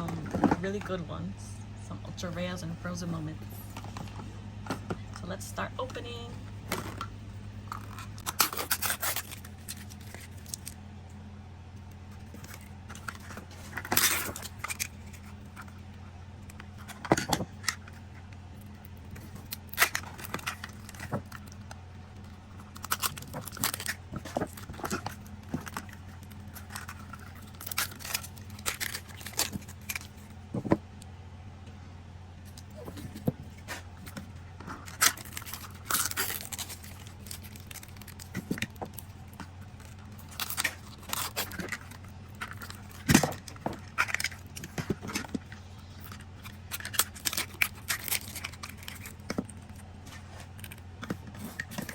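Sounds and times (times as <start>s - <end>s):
steady low hum: 0.0s - 51.9s
wrappers crinkling and tearing: 7.7s - 10.8s, 12.2s - 15.8s, 18.6s - 30.3s, 32.5s - 51.9s.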